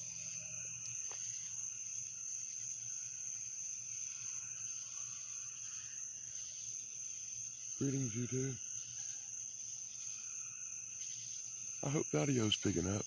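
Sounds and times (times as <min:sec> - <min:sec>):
crickets trilling: 0:00.0 - 0:13.0
low insect drone: 0:00.0 - 0:13.0.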